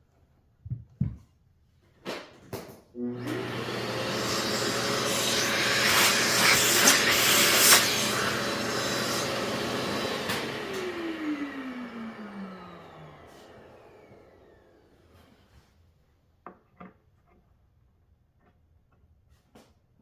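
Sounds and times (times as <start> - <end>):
router cutting wood: 3.0 - 15.0
router motor spinning down: 3.0 - 15.1.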